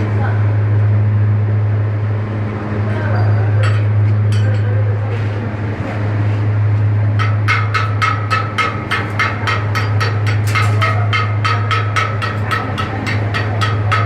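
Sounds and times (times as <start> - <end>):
low hum: 0.0 - 14.0
hammer striking steel plate: 7.2 - 14.0.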